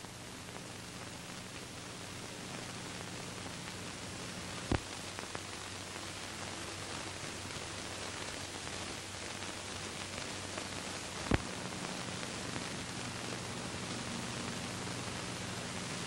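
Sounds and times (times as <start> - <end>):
background hiss: 0.0 - 16.0.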